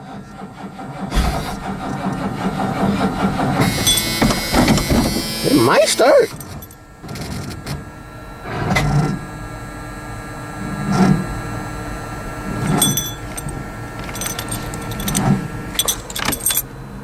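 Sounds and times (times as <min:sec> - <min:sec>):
engine cranking without starting: 0:00.6 - 0:06.8, 0:12.6 - 0:16.7
light key-like rattles: 0:03.6 - 0:04.9, 0:06.0 - 0:06.8, 0:12.6 - 0:16.7.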